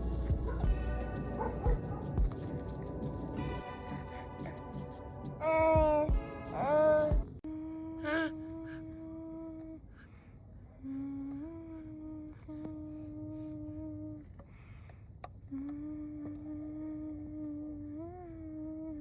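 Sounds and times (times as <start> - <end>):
person humming: 0.0 - 9.9, 15.5 - 19.0.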